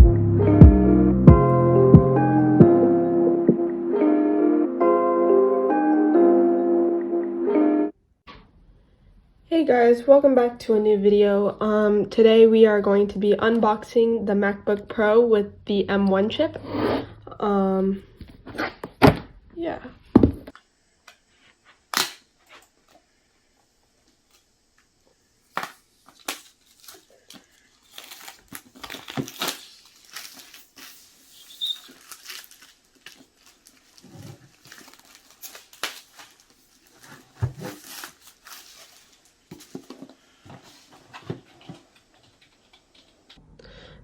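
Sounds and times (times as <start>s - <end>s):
plastic crinkling: 25.5s - 40.1s.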